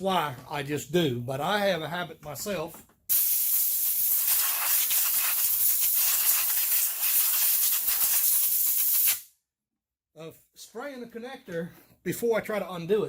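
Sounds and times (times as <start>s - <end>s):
aerosol spray hiss: 3.1s - 9.3s.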